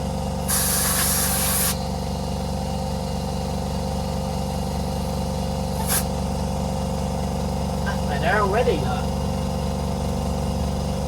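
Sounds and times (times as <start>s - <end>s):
air compressor humming: 0.0s - 3.7s, 4.3s - 11.0s
air hissing: 0.4s - 1.9s, 5.7s - 6.1s.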